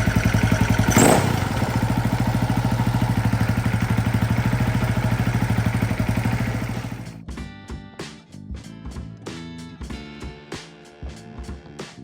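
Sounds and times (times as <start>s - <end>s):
motorcycle engine idling: 0.0s - 7.2s.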